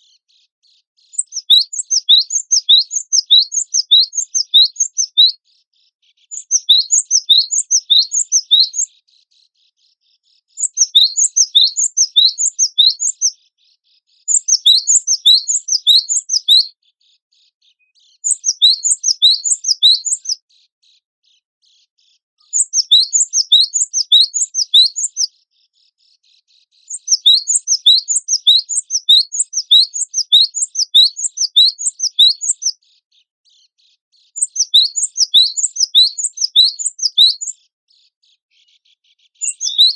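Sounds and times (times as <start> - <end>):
bird chirping song: 0.0 - 39.9.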